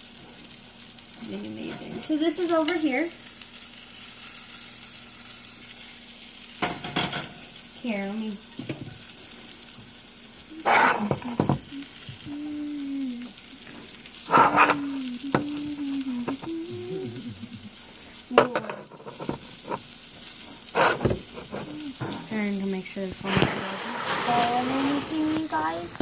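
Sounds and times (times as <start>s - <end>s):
food sizzling in a hot pan: 0.0s - 26.0s
utensil scraping and knocking pan: 10.6s - 11.7s, 14.3s - 15.6s, 18.3s - 19.9s, 20.6s - 22.4s.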